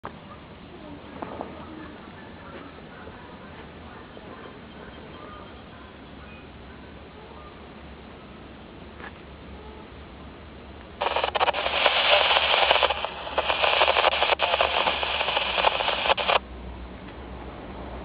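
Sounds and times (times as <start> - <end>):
radio static crackling: 11.0 - 16.4.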